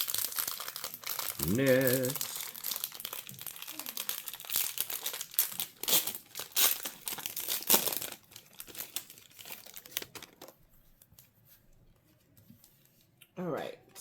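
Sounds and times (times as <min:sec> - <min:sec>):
foil wrapper crinkling and tearing: 0:00.0 - 0:10.6.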